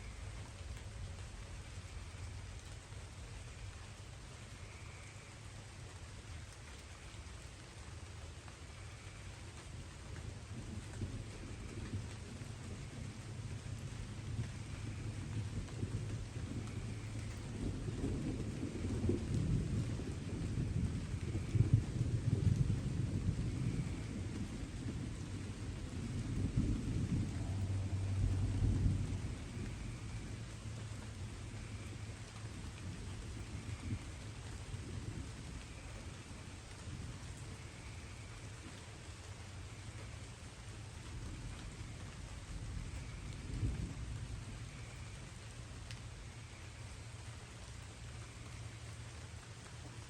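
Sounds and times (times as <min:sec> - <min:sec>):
light rain hissing: 0:00.0 - 0:50.0
distant thunder rumbling: 0:08.7 - 0:49.1.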